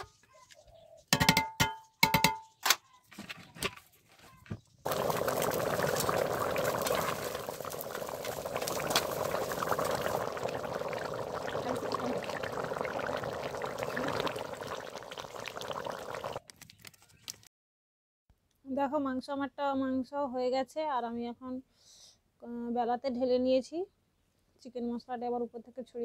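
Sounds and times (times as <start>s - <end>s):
curry boiling and bubbling: 4.8s - 16.4s.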